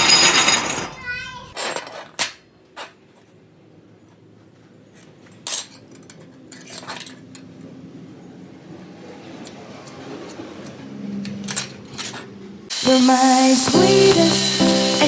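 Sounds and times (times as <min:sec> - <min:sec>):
metal parts clinking and knocking: 0:00.0 - 0:03.0, 0:05.3 - 0:07.5, 0:11.4 - 0:12.3.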